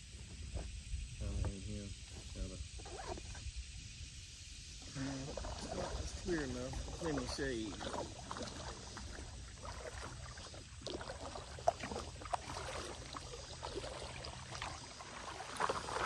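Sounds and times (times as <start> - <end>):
wind rumble on microphone: 0.0 - 9.3
paddle dipping and dripping in water: 0.1 - 16.0.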